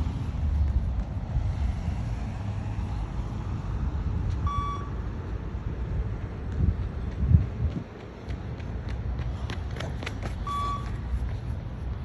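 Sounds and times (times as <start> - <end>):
steady low rumble: 0.0 - 9.7
short electronic beep: 4.5 - 4.9, 10.5 - 10.9.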